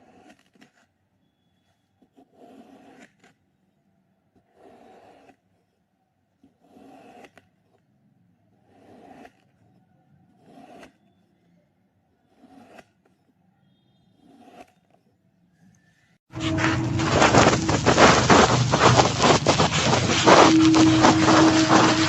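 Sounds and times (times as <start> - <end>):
blade scraping through sand: 16.3 - 22.0.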